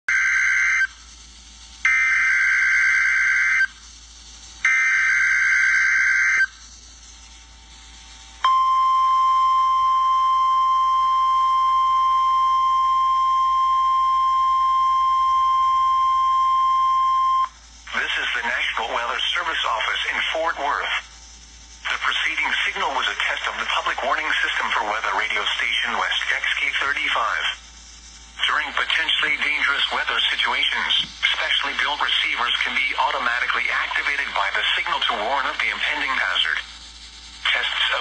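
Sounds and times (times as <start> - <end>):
buzzing warbling data tones: 0.1 - 8.7.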